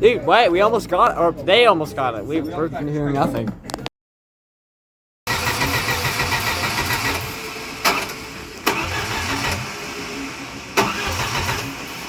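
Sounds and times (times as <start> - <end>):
engine cranking without starting: 5.3 - 12.0.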